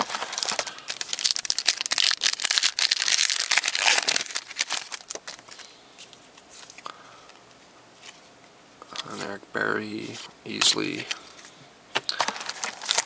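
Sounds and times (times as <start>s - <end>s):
card pack wrapper crinkling: 0.0s - 6.8s, 12.0s - 13.0s.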